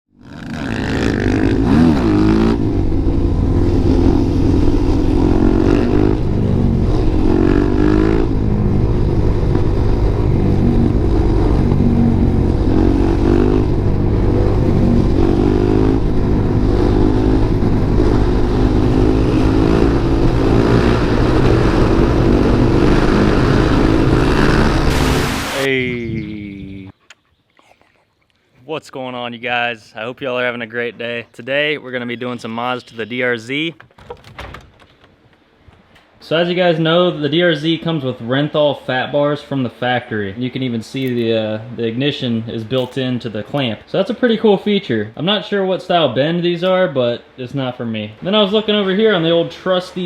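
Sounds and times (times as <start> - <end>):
motorcycle engine revving: 0.1 - 25.6.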